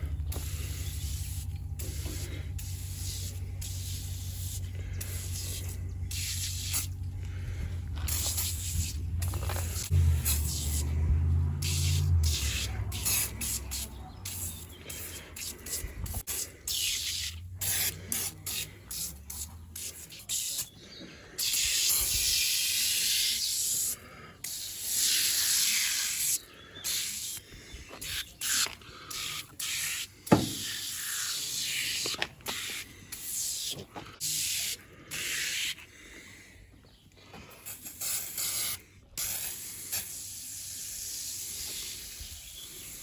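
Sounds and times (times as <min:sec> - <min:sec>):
spray bottle spraying: 0:00.3 - 0:07.1, 0:08.0 - 0:11.0, 0:11.6 - 0:20.7, 0:21.4 - 0:27.4, 0:28.0 - 0:35.8, 0:37.7 - 0:43.0
sharp thump: 0:30.3 - 0:30.6.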